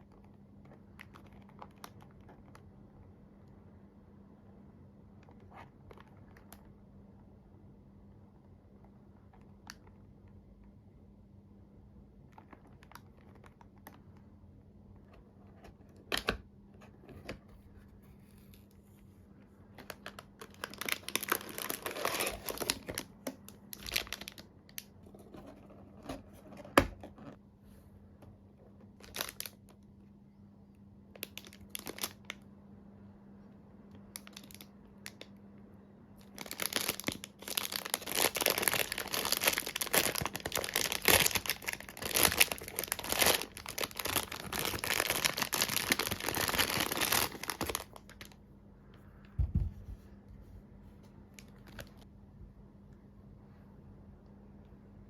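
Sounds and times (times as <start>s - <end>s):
packaging crinkling and rustling: 19.8s - 27.2s, 28.8s - 29.8s, 31.2s - 32.4s, 34.2s - 35.3s, 36.2s - 48.4s, 51.4s - 52.1s
packaging tearing: 19.9s - 23.1s, 23.7s - 24.4s, 29.0s - 29.6s, 36.4s - 48.4s.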